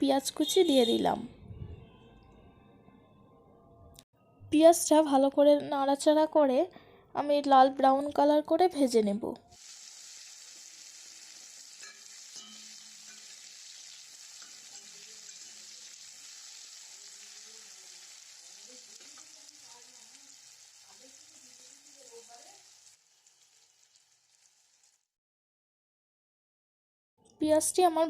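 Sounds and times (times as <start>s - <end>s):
onions sizzling in oil: 9.6s - 25.1s.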